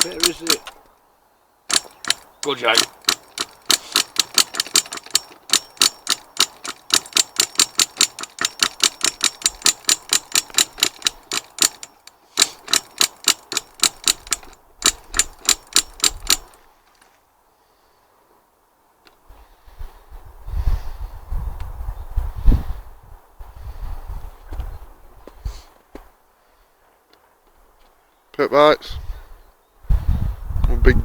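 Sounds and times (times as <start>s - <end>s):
fast sharp clicks: 0.0s - 1.0s, 1.7s - 16.6s.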